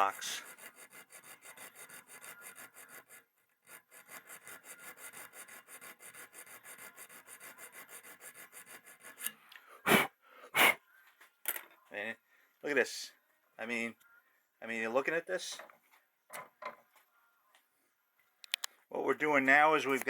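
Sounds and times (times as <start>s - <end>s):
file rasping on steel: 0.0s - 9.4s.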